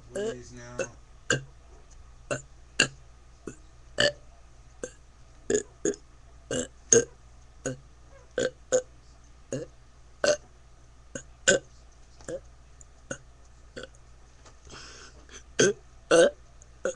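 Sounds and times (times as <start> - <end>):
person burping: 0.2 - 1.5, 6.5 - 7.8, 11.5 - 11.7, 15.3 - 16.9.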